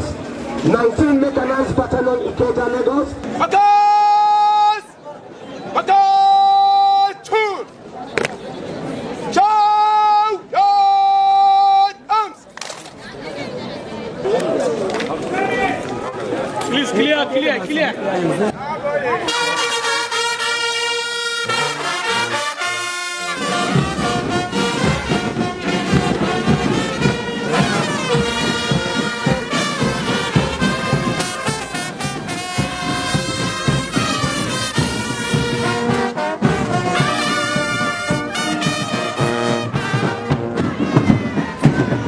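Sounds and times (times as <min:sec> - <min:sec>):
brass band playing: 0:19.2 - 0:42.0
drums beating: 0:21.3 - 0:42.0.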